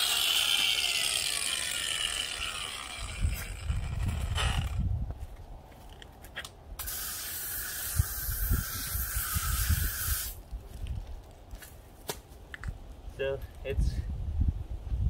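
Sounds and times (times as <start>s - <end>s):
water spraying onto concrete: 6.8s - 10.4s.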